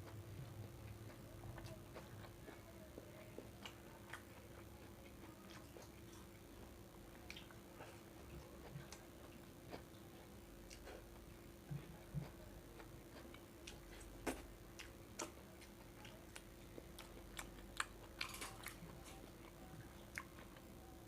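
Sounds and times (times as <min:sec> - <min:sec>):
chewing food: 0:00.0 - 0:21.0
low steady hum: 0:00.0 - 0:21.0.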